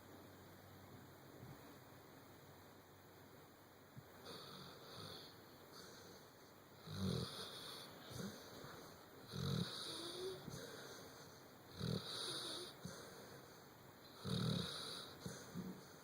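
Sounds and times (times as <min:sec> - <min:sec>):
soft breathing: 0:04.2 - 0:06.6, 0:07.4 - 0:13.8, 0:14.9 - 0:16.0
snoring with rasp: 0:06.9 - 0:08.4, 0:09.3 - 0:10.5, 0:11.7 - 0:12.9, 0:14.2 - 0:15.8.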